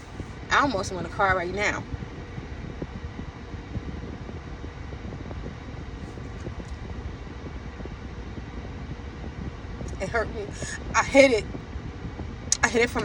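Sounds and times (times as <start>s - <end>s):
low background rumble: 0.0s - 13.0s.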